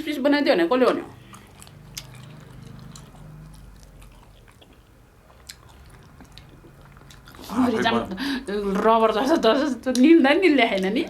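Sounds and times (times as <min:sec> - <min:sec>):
chewing bread: 0:00.9 - 0:09.0
wet mouth clicks: 0:01.1 - 0:07.5.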